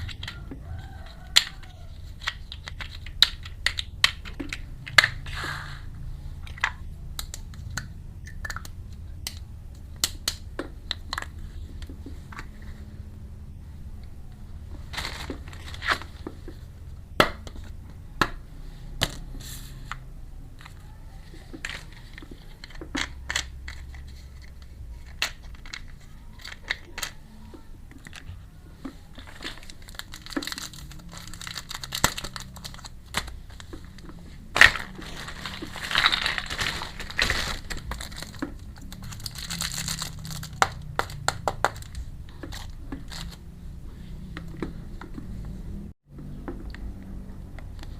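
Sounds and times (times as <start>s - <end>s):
plastic packaging crinkling: 14.8s - 16.2s, 28.0s - 43.4s.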